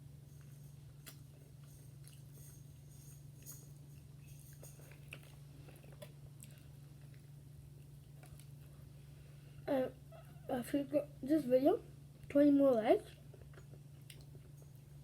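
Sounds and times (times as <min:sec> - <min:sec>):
chewing fried chicken: 0:00.4 - 0:08.9, 0:13.1 - 0:15.0.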